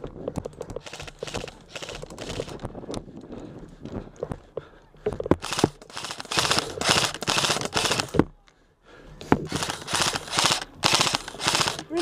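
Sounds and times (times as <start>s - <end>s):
airsoft rifles firing full-auto: 0.8s - 2.6s, 5.4s - 8.2s, 9.5s - 12.0s.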